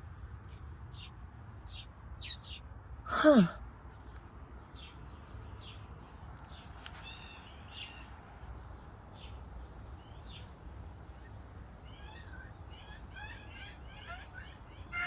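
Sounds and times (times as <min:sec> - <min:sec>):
small birds chirping: 0:00.3 - 0:15.0.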